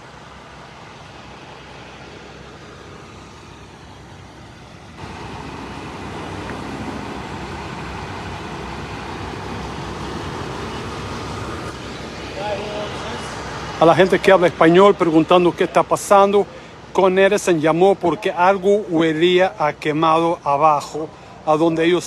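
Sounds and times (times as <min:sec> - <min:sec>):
street traffic: 0:00.0 - 0:22.0.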